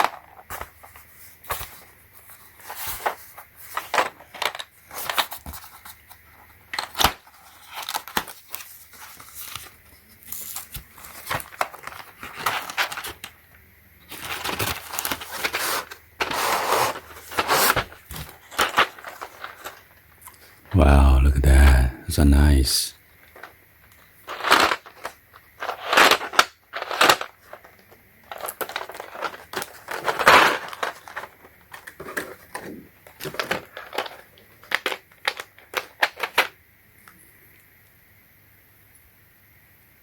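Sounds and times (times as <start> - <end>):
plastic packaging crinkling: 24.3 - 36.4.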